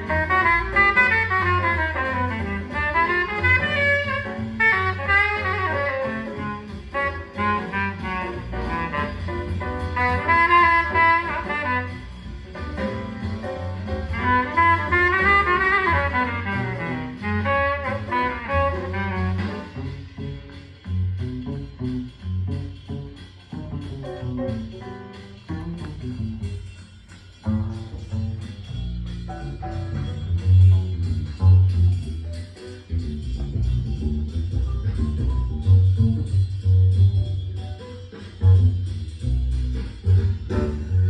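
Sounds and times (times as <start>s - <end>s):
saxophone melody: 0.0s - 24.4s
walking double bass: 0.0s - 41.0s.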